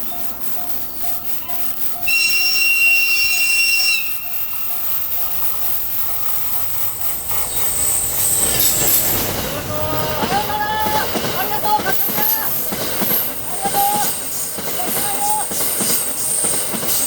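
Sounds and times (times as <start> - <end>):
level-crossing alarm bell: 0.0 - 17.0
train passing: 0.0 - 17.0
wheel squeal: 2.0 - 11.0
locomotive horn: 2.1 - 4.4.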